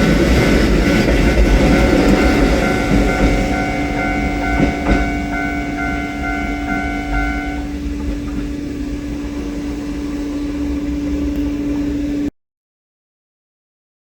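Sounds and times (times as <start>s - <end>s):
electric train passing: 0.0s - 12.3s
electronic level-crossing bell: 1.5s - 7.8s.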